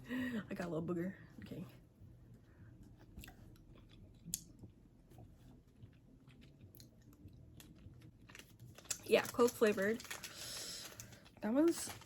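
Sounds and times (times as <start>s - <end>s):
chewing gummy candy: 3.2s - 11.4s.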